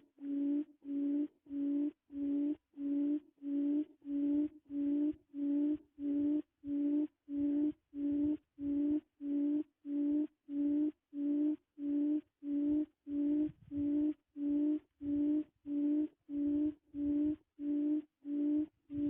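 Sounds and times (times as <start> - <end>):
low hooting quail call: 0.0 - 19.0.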